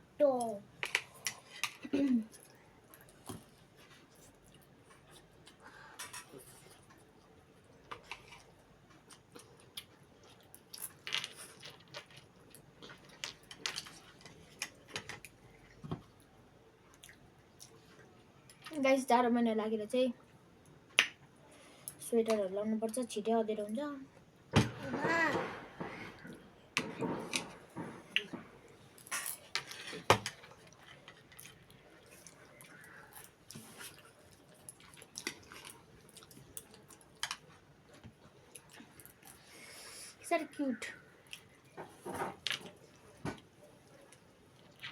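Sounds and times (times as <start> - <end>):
quiet chewing: 0.8 - 18.8, 27.5 - 40.1, 41.1 - 44.9.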